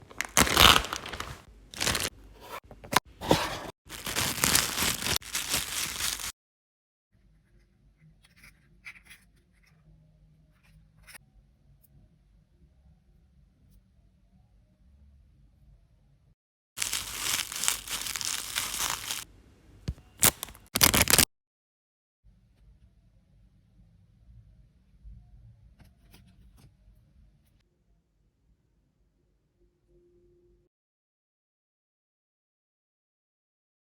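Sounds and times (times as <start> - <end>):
plastic packaging tearing and crinkling: 0.0 - 2.1, 3.9 - 6.4, 16.8 - 19.3, 19.9 - 21.3
wrapper crackles: 0.0 - 2.1, 3.9 - 6.4, 16.8 - 19.3, 19.9 - 21.3.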